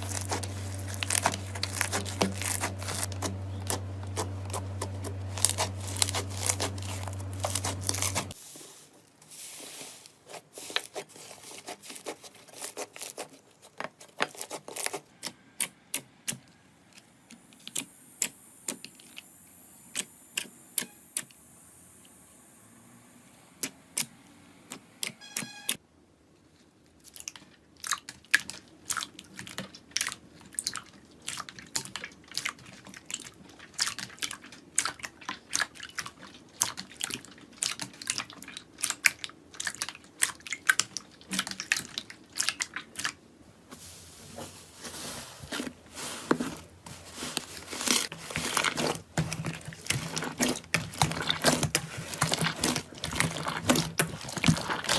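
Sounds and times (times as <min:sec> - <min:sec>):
low hum: 0:00.0 - 0:08.4.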